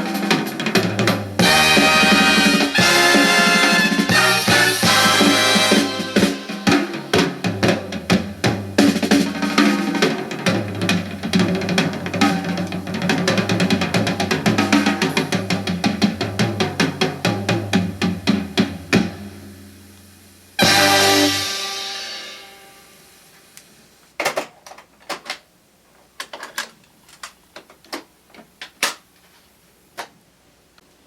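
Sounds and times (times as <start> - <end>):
drum-heavy music over speakers: 0.0 - 19.6, 20.6 - 23.0.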